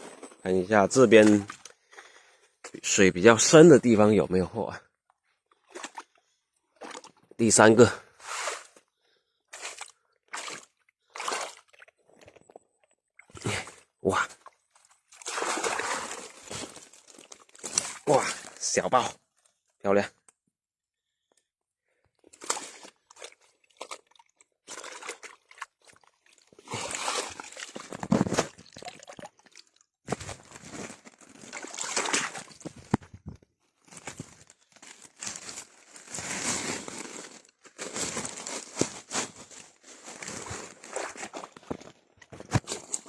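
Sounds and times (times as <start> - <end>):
water sloshing and pouring: 0.1 - 2.1, 5.5 - 7.6, 9.5 - 18.7, 22.2 - 33.1, 39.5 - 43.0
wet net rustling and crinkling: 5.6 - 7.2, 9.5 - 12.5, 14.5 - 18.8, 22.2 - 43.0.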